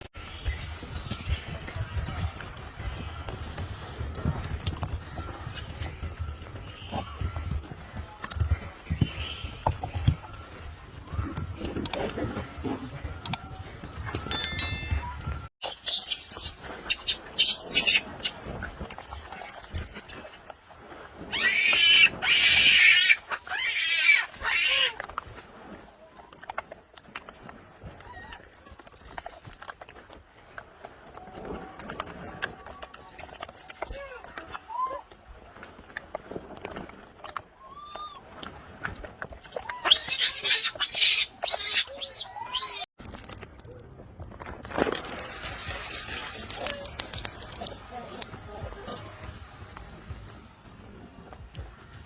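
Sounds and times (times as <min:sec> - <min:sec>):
monkey screaming: 0:15.9 - 0:18.3, 0:21.3 - 0:25.0, 0:39.6 - 0:42.8.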